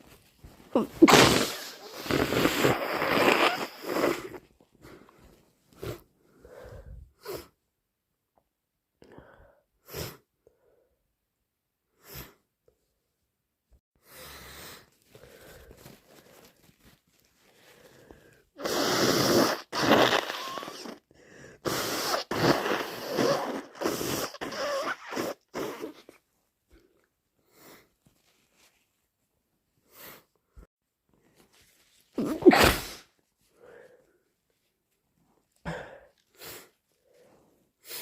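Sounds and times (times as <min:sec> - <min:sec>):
person breathing and sniffing: 0:00.0 - 0:07.6, 0:14.0 - 0:26.2, 0:27.4 - 0:28.7, 0:29.8 - 0:34.4, 0:35.6 - 0:38.0
person blowing nose: 0:00.5 - 0:05.0, 0:14.0 - 0:26.2, 0:32.1 - 0:33.2, 0:35.7 - 0:36.8, 0:37.8 - 0:38.0.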